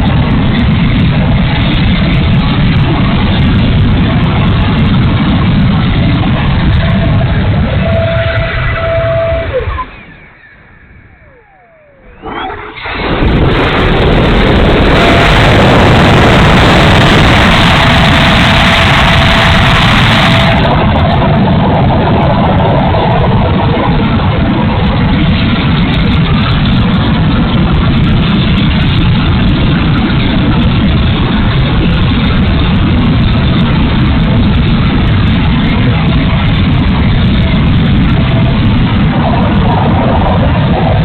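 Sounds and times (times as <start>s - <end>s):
electric ducted fans rushing: 0.0s - 41.0s.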